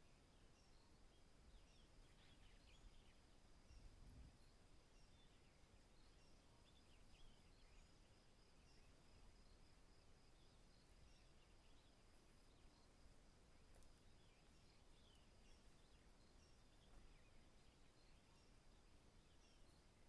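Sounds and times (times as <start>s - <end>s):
bird chirps: 0.0s - 20.0s
high insect hum: 0.0s - 20.0s.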